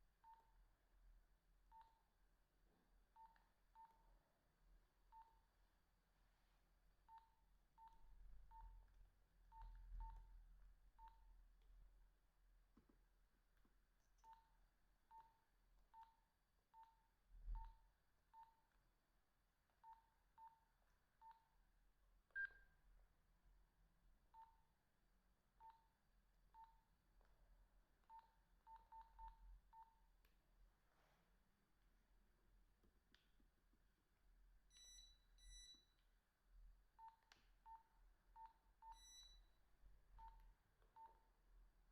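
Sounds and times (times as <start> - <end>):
phone keypad beeps: 34.7 - 35.9, 37.0 - 39.4.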